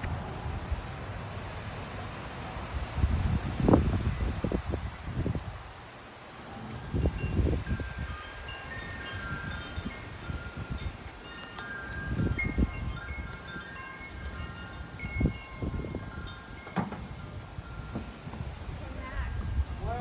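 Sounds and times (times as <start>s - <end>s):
wind buffeting microphone: 0.0s - 20.0s
wind chimes ringing: 6.6s - 20.0s.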